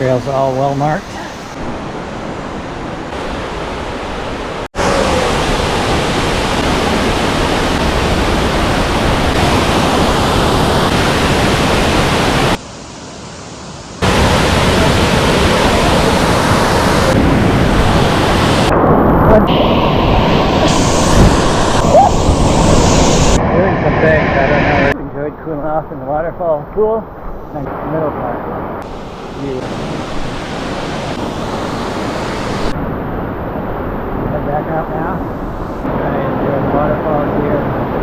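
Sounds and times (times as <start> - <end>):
waterfall crashing into pool: 4.4 - 12.6, 14.0 - 23.4.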